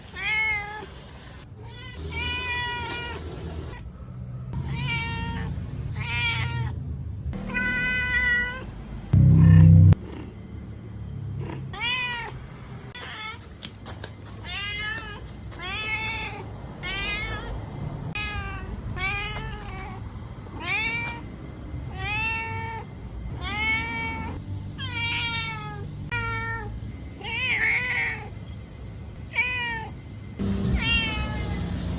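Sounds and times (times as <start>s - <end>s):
cat meowing: 0.2s - 0.9s, 1.6s - 3.8s, 4.6s - 6.8s, 7.4s - 8.7s, 11.5s - 13.5s, 14.4s - 21.3s, 21.9s - 28.3s, 29.3s - 30.0s, 30.6s - 31.7s
loud low thump: 9.2s - 10.0s.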